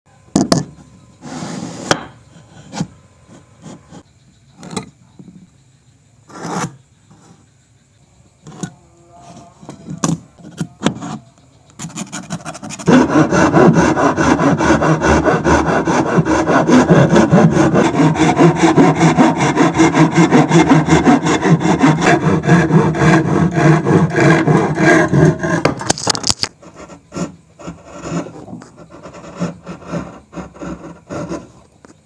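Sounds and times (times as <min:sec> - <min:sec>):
knocks: 0:00.4 - 0:00.8
short scrapes: 0:06.3 - 0:07.4
fast steady rasping: 0:11.8 - 0:31.7.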